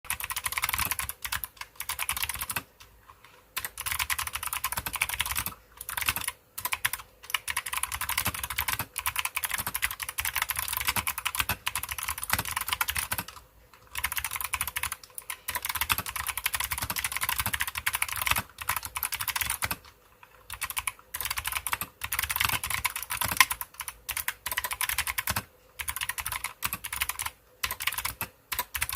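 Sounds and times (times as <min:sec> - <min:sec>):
clicky mechanical keyboard typing: 0:00.1 - 0:28.9.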